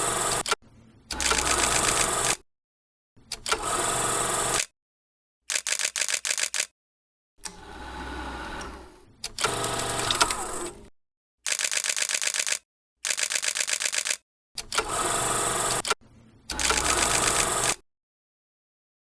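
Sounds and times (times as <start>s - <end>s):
film projector clatter: 0.1s - 0.5s, 1.2s - 2.4s, 9.4s - 10.8s, 16.6s - 17.8s.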